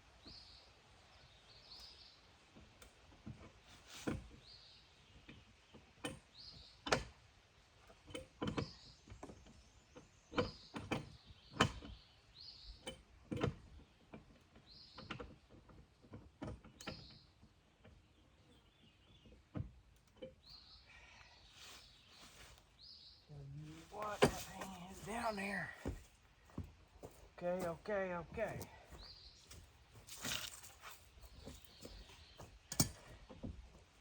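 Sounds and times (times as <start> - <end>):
knocks and clicks of machinery handwork: 10.4 - 12.0, 32.7 - 33.6
bird chirping: 20.2 - 34.0.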